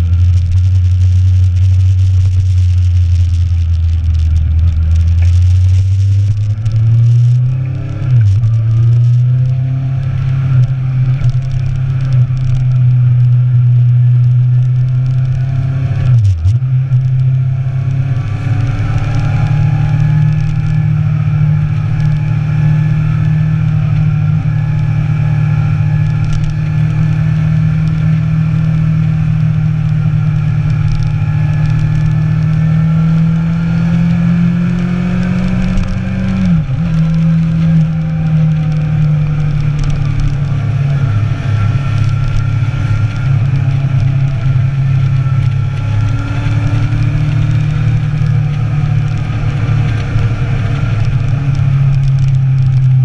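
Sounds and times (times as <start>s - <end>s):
motorcycle engine running: 0.0s - 53.0s.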